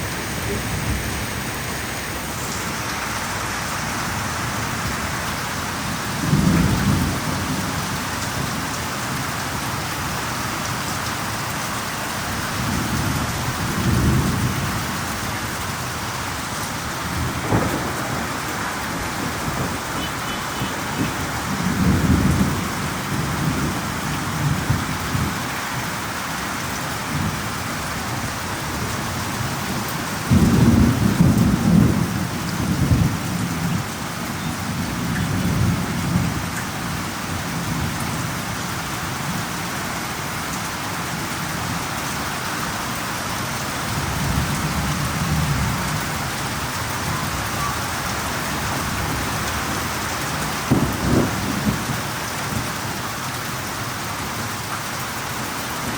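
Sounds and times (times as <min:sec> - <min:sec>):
steady rain: 0:00.0 - 0:55.9
rolling thunder: 0:06.0 - 0:08.6, 0:16.7 - 0:25.4, 0:30.3 - 0:33.9, 0:44.0 - 0:52.8.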